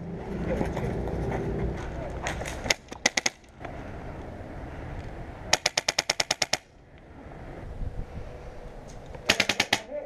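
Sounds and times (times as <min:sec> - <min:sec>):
airsoft gun shots: 0:09.3 - 0:09.9.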